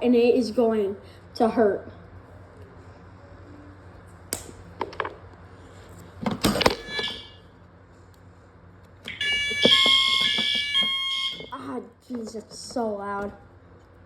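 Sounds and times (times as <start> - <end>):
fire alarm blaring: 6.6 - 7.5, 9.1 - 11.8.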